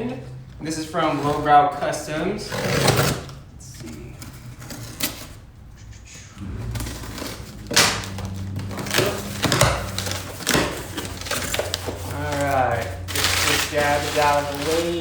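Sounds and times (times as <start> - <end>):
low steady hum: 5.9 - 14.8.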